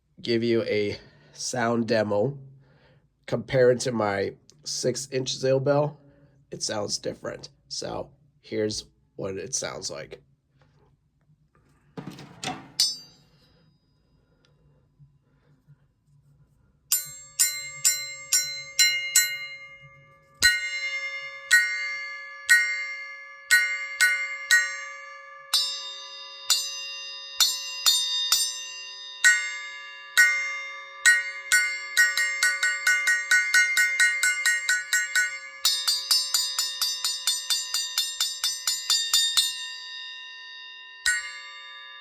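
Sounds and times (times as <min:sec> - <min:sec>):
bell cymbal strikes ringing: 0:12.8 - 0:14.2, 0:16.9 - 0:42.0.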